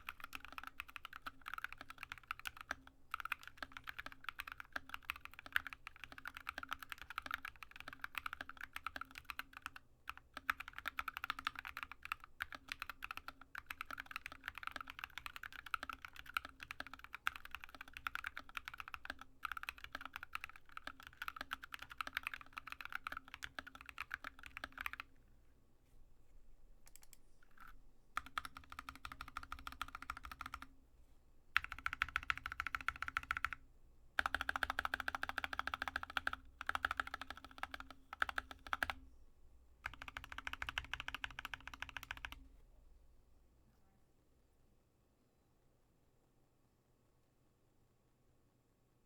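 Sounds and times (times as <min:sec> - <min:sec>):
mechanical keyboard typing: 0:00.0 - 0:25.1, 0:26.9 - 0:30.7, 0:31.6 - 0:33.6, 0:34.2 - 0:39.0, 0:39.8 - 0:42.4.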